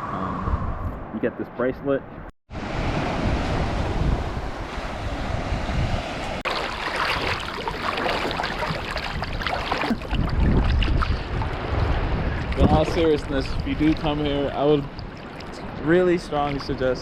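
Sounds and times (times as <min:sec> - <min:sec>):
wind buffeting microphone: 0:00.0 - 0:01.2, 0:02.2 - 0:17.0
surf washing onto beach: 0:02.6 - 0:10.2.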